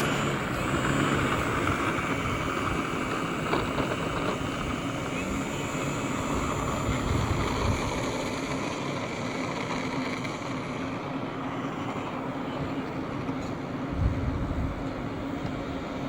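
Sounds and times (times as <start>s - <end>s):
model plane propeller drone: 0.0s - 16.0s
wind buffeting microphone: 0.6s - 8.6s, 13.9s - 15.7s.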